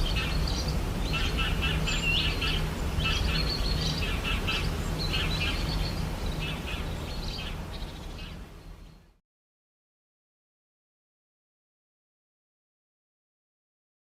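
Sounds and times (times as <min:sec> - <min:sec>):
small birds chirping: 0:00.0 - 0:09.2.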